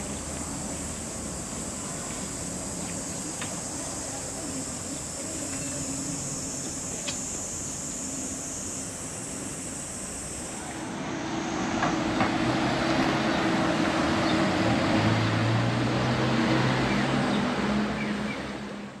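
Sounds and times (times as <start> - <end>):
vehicle passing close by: 10.7 - 18.9.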